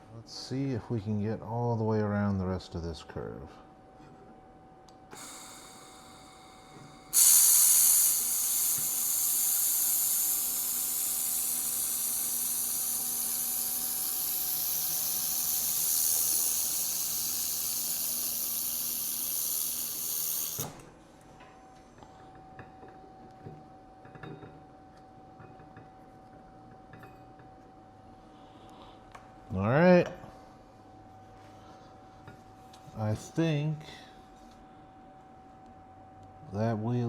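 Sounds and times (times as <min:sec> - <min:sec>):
laser welder hissing: 0:05.1 - 0:20.8.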